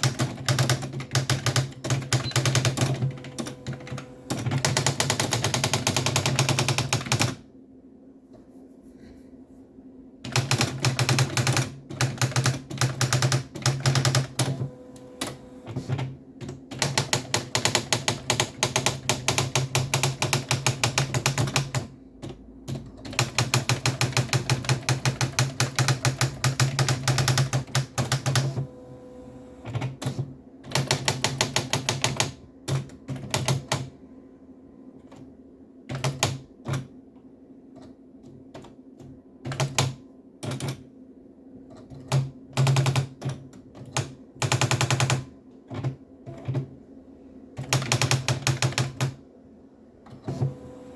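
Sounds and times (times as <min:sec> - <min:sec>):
electronic typewriter printing: 0:00.0 - 0:07.4, 0:10.2 - 0:34.0, 0:35.9 - 0:37.0, 0:38.2 - 0:40.9, 0:41.7 - 0:46.8, 0:47.6 - 0:49.2, 0:50.1 - 0:50.9
steady hum: 0:28.4 - 0:30.7.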